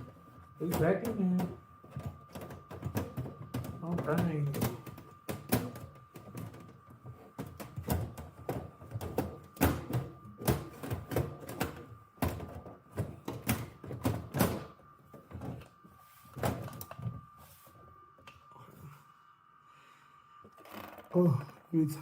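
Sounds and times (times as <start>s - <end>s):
computer parts clicking and rattling: 0.5s - 15.7s.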